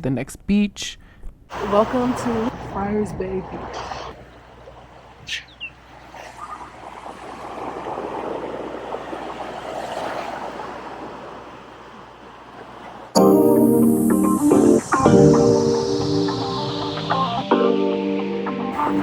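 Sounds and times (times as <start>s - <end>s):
surf washing on a beach: 1.5s - 5.2s, 5.8s - 17.4s
loud music: 13.2s - 19.0s.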